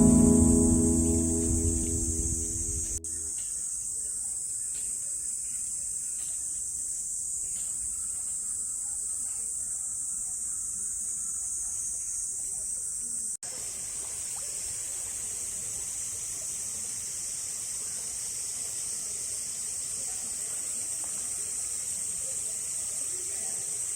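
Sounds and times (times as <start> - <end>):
high-pitched insect chorus: 9.8 - 23.9
broad hiss: 13.5 - 23.9.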